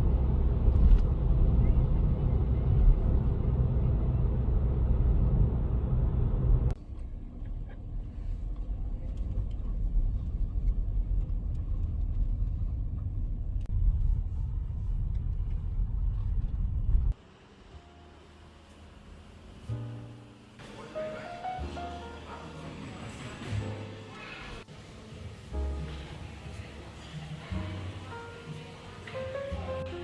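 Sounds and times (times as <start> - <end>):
car road and engine rumble: 0.0 - 17.6.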